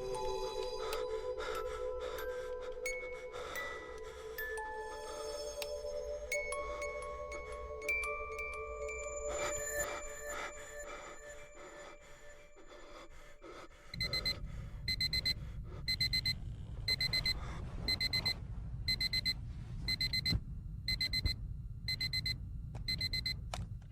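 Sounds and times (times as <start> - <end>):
chiming tone: 0.0 - 12.4
low rumble: 13.7 - 23.9
alarm clock beeping: 14.0 - 20.3, 20.9 - 23.4.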